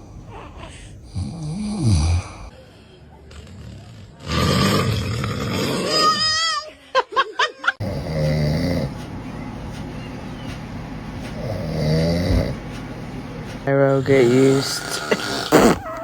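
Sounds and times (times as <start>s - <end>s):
man snoring with whistle: 1.1s - 2.5s, 7.8s - 8.9s, 11.4s - 12.6s, 14.1s - 16.0s.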